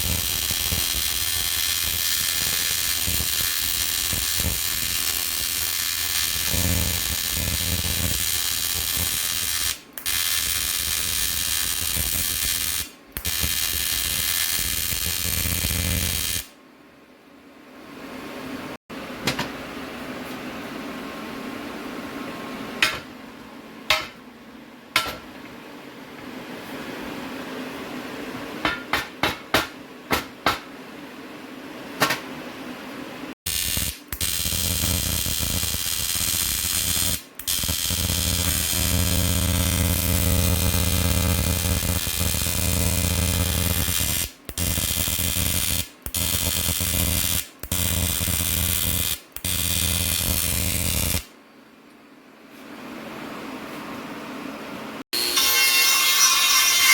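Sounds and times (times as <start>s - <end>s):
electric tool buzzing: 0.0s - 16.5s, 33.5s - 51.3s.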